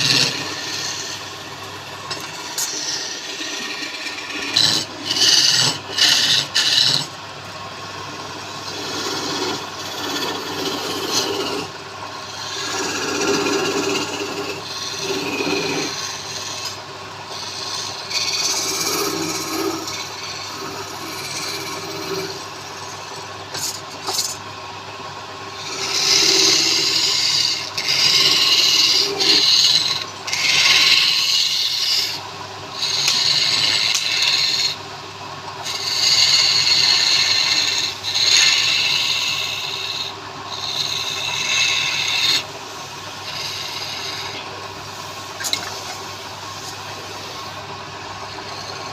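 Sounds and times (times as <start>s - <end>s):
tool scraping spinning wood: 0.0s - 48.9s
wood lathe humming: 0.0s - 48.9s.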